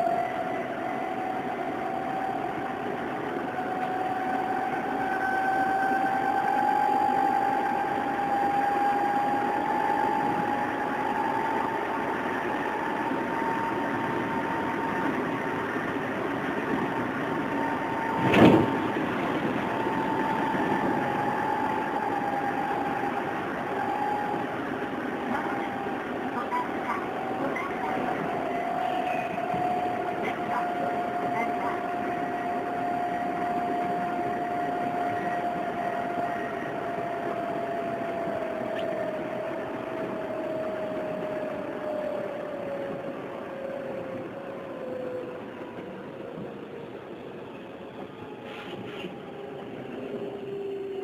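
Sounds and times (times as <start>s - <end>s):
electric train motor whine: 0.0s - 51.0s
train rolling noise: 0.0s - 51.0s.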